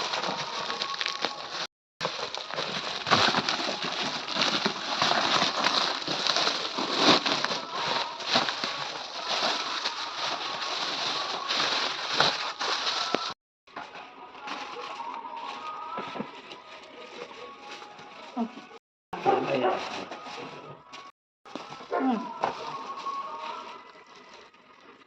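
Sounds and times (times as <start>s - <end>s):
plastic packaging crinkling: 0.0s - 13.4s, 19.3s - 25.0s.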